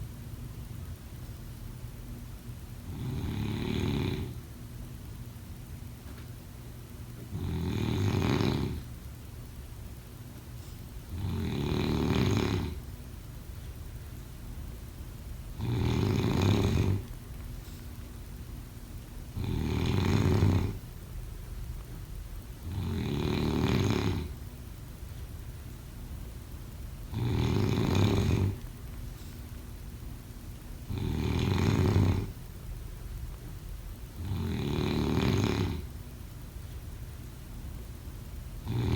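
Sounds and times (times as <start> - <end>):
person snoring: 2.9 - 4.4, 7.3 - 8.8, 11.1 - 12.8, 15.6 - 17.0, 19.4 - 20.8, 22.6 - 24.4, 27.1 - 28.6, 30.9 - 32.4, 34.2 - 35.9, 38.6 - 38.9.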